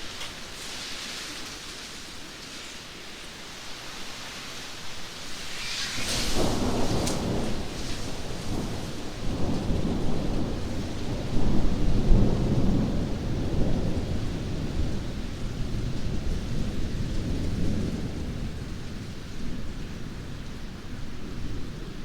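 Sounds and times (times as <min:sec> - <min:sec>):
rain: 0:00.0 - 0:22.0
thunder rumbling: 0:05.3 - 0:19.6.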